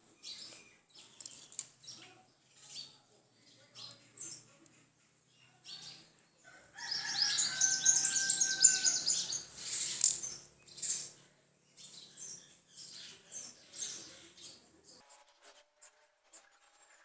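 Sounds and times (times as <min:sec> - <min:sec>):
bird chirping rapidly: 0:06.8 - 0:11.2.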